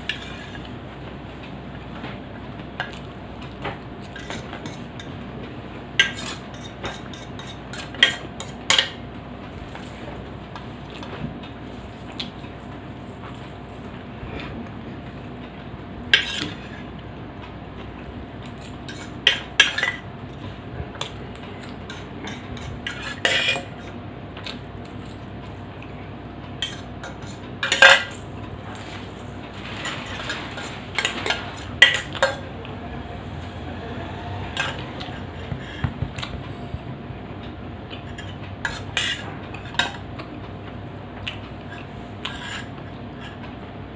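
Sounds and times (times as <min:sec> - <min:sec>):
cutlery clinking on a plate: 0:26.6 - 0:28.2.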